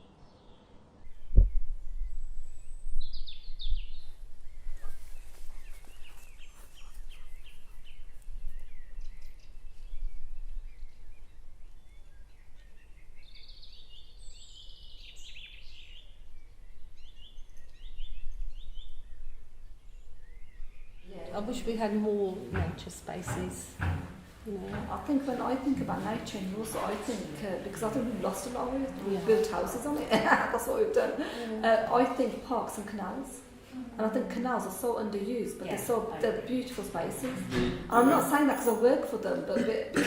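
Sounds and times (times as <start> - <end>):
birds chirping and singing: 0.0 - 21.9.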